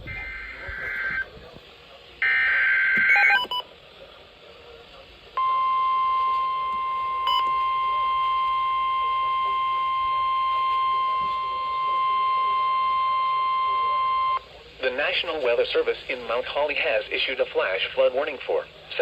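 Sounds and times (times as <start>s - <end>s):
buzzy digital header bursts: 0.0s - 1.3s
steady warning alarm tone: 0.0s - 1.3s, 2.2s - 3.6s, 5.4s - 14.5s.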